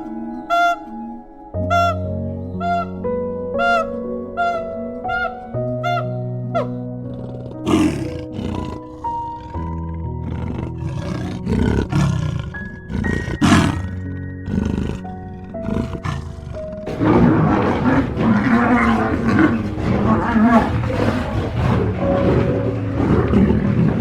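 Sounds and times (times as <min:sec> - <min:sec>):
soft piano music: 0:00.0 - 0:24.0
big cat growling and roaring: 0:07.0 - 0:24.0.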